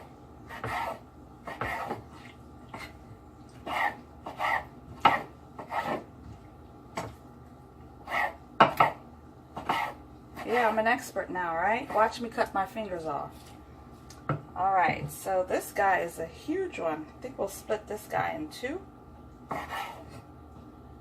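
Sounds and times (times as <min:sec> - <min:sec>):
knife chopping on cutting board: 0:00.5 - 0:02.1, 0:03.6 - 0:06.1, 0:08.1 - 0:09.0, 0:09.6 - 0:10.6, 0:19.5 - 0:20.2.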